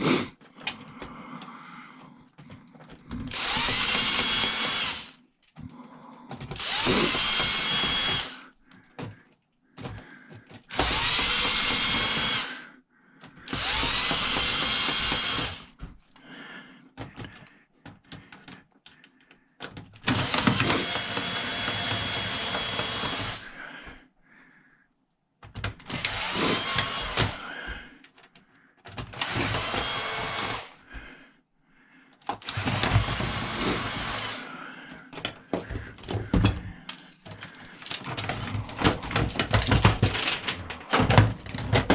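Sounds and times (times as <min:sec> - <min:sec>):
power drill whine: 0:03.3 - 0:05.2, 0:06.5 - 0:08.4, 0:10.7 - 0:12.6, 0:13.5 - 0:15.7, 0:20.0 - 0:23.6, 0:25.9 - 0:27.5, 0:29.1 - 0:30.8, 0:32.4 - 0:34.5.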